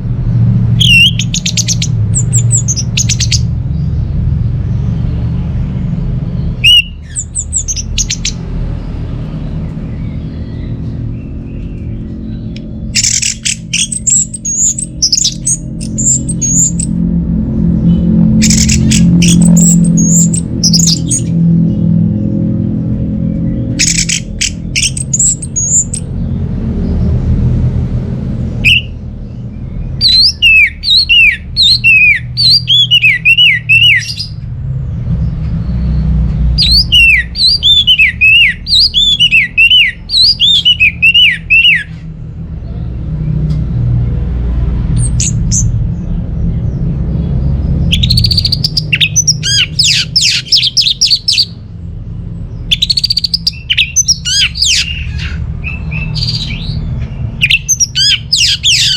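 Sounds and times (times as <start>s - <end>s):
low rumble: 0.0s - 30.4s, 42.0s - 58.9s
thrush singing whistled notes: 0.6s - 3.6s, 5.0s - 17.2s, 17.8s - 26.1s, 28.5s - 34.4s, 35.8s - 42.0s, 47.8s - 51.6s, 52.6s - 58.9s.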